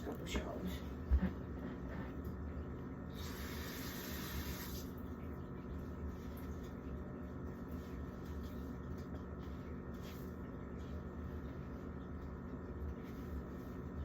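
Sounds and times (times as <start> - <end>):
low steady hum: 0.0 - 14.0
water hissing from tap: 3.1 - 5.0.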